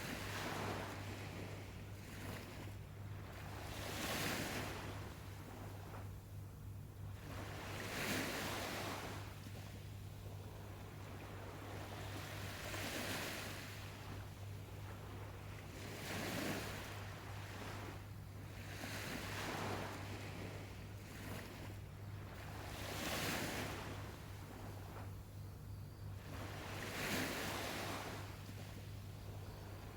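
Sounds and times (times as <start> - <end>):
steady low hum: 9.0 - 26.8, 27.9 - 29.9.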